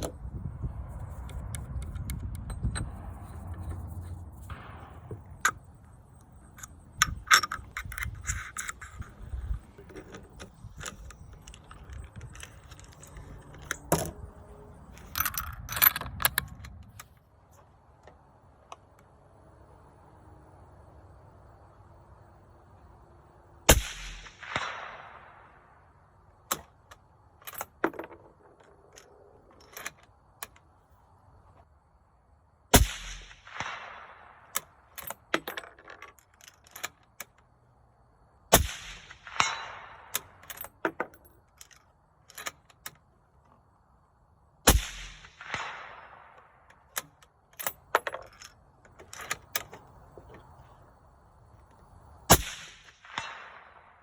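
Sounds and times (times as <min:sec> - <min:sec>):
metallic clicks of gun handling: 0:06.2 - 0:14.2, 0:15.0 - 0:17.2, 0:26.5 - 0:30.7, 0:34.5 - 0:37.5, 0:39.0 - 0:43.1.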